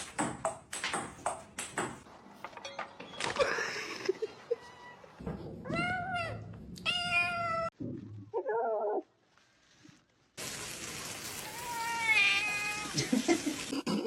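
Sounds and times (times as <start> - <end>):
cat meowing: 11.4 - 13.0.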